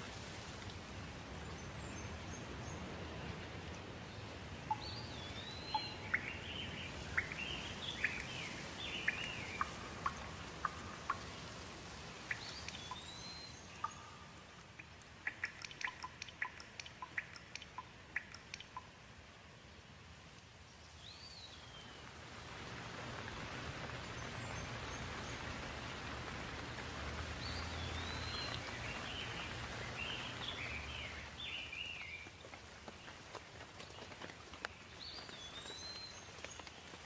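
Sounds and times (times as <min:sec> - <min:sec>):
steady rain: 0:00.0 - 0:37.0
birds chirping: 0:04.2 - 0:11.5, 0:12.2 - 0:18.9, 0:23.7 - 0:32.4.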